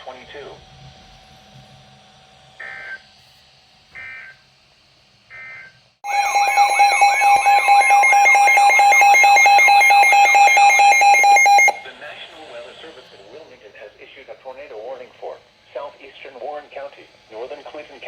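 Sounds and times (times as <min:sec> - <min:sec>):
digital data tone bursts: 0:06.0 - 0:11.9
warbling radio alarm tone: 0:06.0 - 0:11.9.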